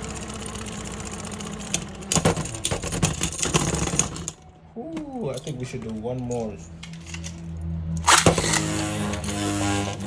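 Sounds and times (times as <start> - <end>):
tops clacking and rattling: 1.2 - 4.4.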